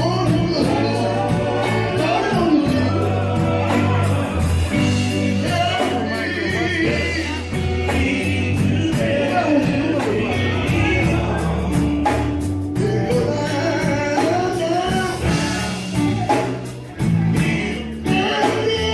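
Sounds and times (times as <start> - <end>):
gospel song with band: 0.0 - 18.9.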